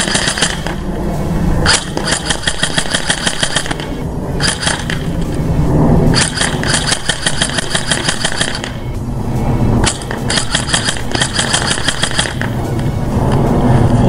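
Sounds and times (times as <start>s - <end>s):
airsoft rifle firing bursts: 0.0s - 0.9s, 1.6s - 5.1s, 6.1s - 9.0s, 9.8s - 12.7s.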